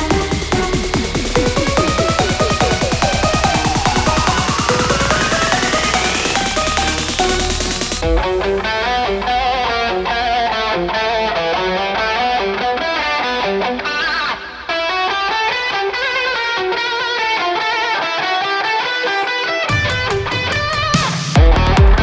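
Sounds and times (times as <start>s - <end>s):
deep bass: 0.0s - 11.1s, 21.4s - 22.0s
psytrance lead melody: 0.0s - 12.7s.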